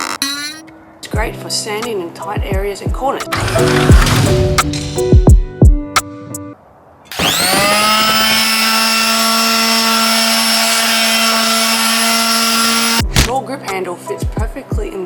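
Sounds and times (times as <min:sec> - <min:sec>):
electric sander motor whine: 0:07.1 - 0:13.0.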